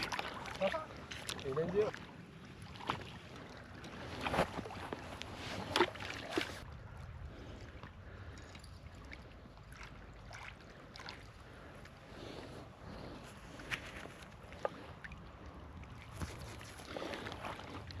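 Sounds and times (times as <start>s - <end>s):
sharp water splashes: 0.0s - 4.3s
water lapping and trickling: 0.0s - 18.0s.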